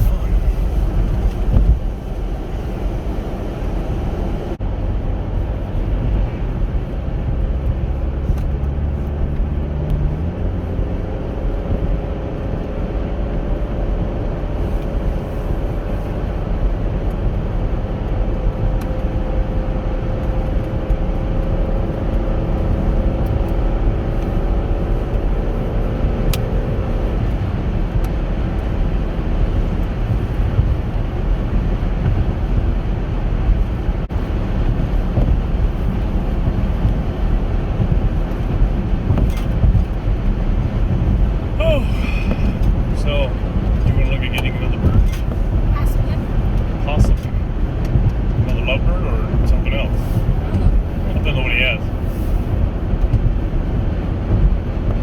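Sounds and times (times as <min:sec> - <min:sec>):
car engine and tyre rumble: 0:00.0 - 0:55.0.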